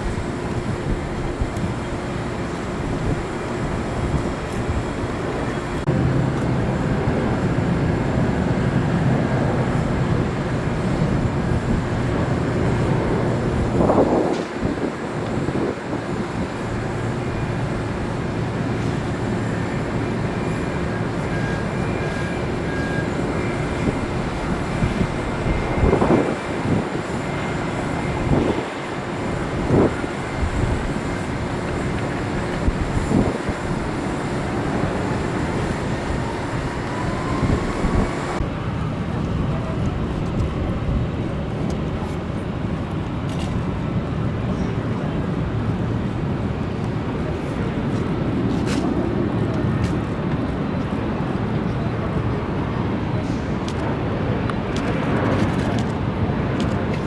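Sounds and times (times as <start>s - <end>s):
thin engine whine: 0.0s - 39.7s
jet engine roar: 0.0s - 57.0s.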